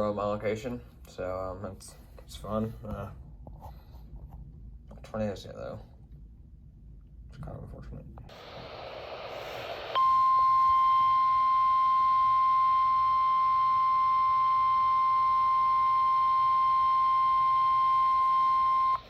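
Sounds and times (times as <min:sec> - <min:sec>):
radio hiss: 0:08.3 - 0:10.8
steady high alarm tone: 0:09.9 - 0:19.0.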